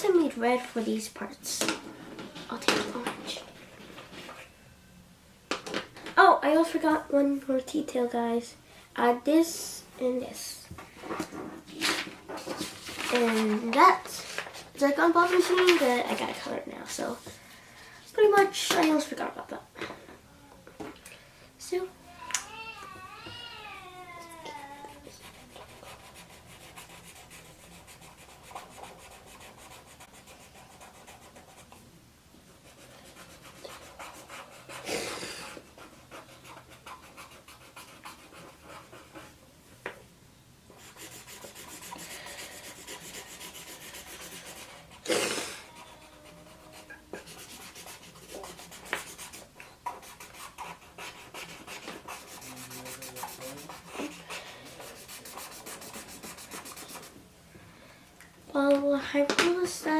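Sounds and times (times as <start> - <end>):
marker scratching on paper: 25.1 - 31.8, 32.6 - 39.4, 40.8 - 45.1, 45.7 - 57.2.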